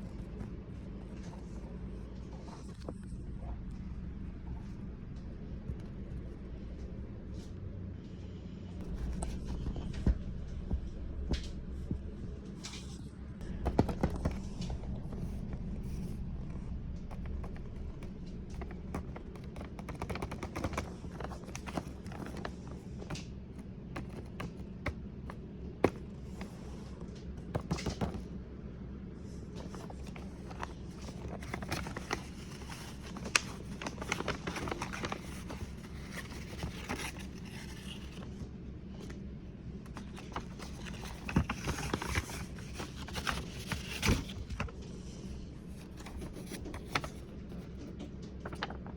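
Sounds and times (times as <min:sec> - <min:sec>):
steady low hum: 0:00.0 - 0:48.9.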